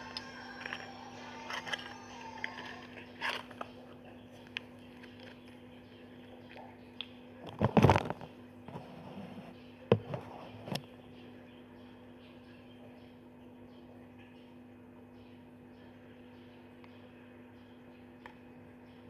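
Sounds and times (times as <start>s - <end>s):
steady low hum: 0.0s - 19.0s
slime squishing and scraping: 0.1s - 5.5s.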